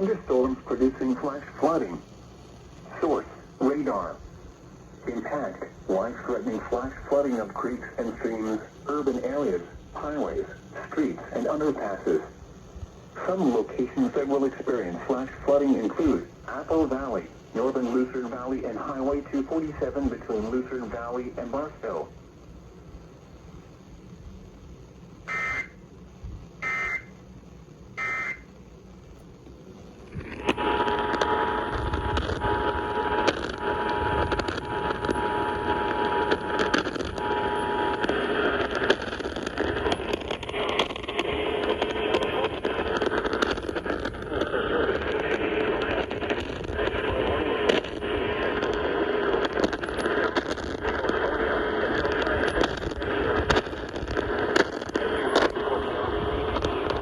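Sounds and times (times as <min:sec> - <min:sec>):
radio static crackling: 0:00.0 - 0:57.0
warbling data bursts: 0:25.2 - 0:25.8, 0:26.6 - 0:27.1, 0:28.0 - 0:28.5
two-tone attention signal buzz: 0:25.3 - 0:25.8, 0:26.6 - 0:27.1, 0:28.0 - 0:28.5.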